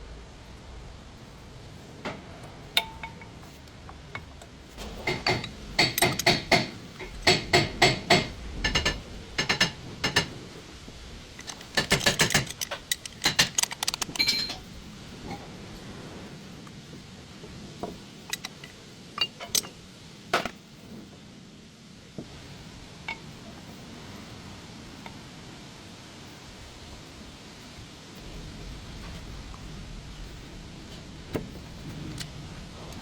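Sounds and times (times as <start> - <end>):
metal tools clinking: 2.7 - 10.3, 11.3 - 14.7, 18.3 - 19.8.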